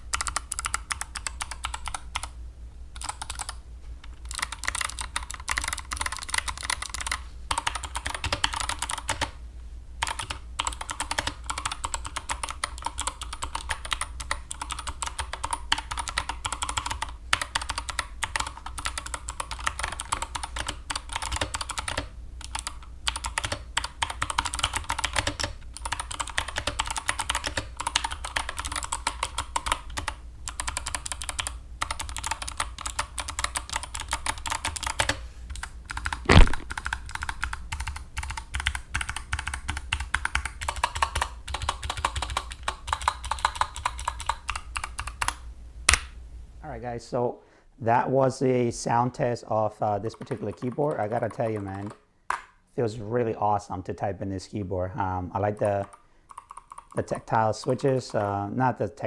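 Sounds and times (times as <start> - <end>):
clicky mechanical keyboard typing: 0.1 - 2.3, 3.0 - 9.4, 10.0 - 46.0, 50.1 - 52.4, 55.6 - 58.3.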